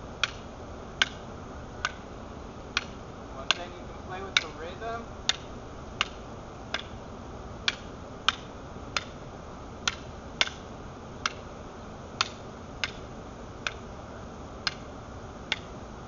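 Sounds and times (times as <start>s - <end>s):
fighting sticks clacking: 0.2s - 1.2s, 1.8s - 2.1s, 2.7s - 7.0s, 7.6s - 9.2s, 9.8s - 11.5s, 12.2s - 13.9s, 14.6s - 14.9s, 15.5s - 15.7s.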